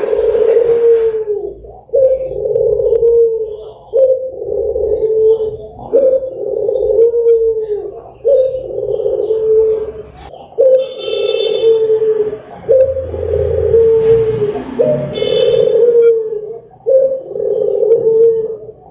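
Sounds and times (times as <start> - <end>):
dove cooing: 0.0 - 18.9
brief scratchy noise: 12.6 - 15.7.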